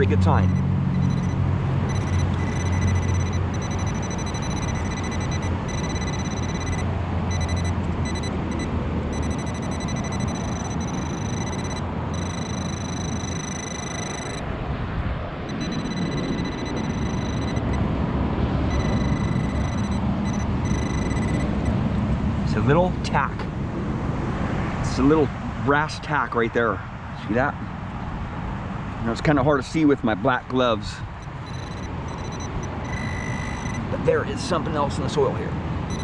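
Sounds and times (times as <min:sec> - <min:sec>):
faint high whine: 0:00.0 - 0:14.5, 0:15.5 - 0:17.8, 0:18.7 - 0:21.7, 0:31.3 - 0:33.9
freeway traffic roar: 0:00.0 - 0:36.0.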